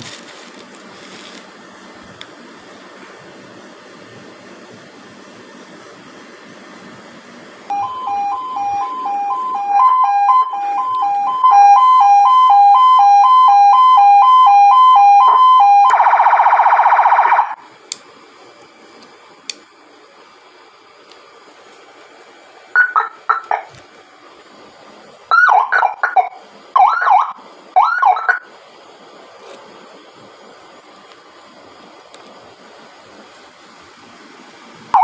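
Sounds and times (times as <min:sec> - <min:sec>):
two-tone police siren: 0:07.7 - 0:17.6, 0:22.8 - 0:23.6, 0:25.3 - 0:28.5.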